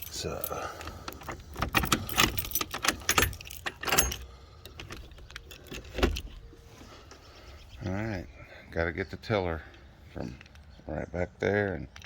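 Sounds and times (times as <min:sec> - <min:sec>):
clattering clicks and rattles: 0:00.8 - 0:06.3.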